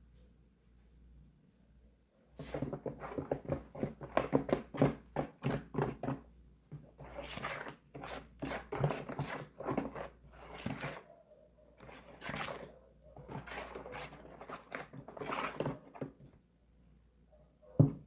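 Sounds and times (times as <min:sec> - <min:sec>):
spoon stirring batter in a bowl: 0:02.4 - 0:11.0, 0:11.8 - 0:16.3.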